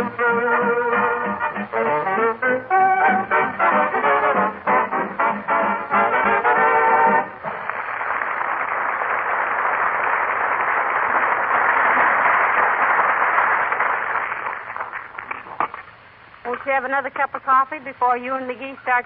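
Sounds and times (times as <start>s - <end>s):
audience applauding: 5.7s - 15.9s.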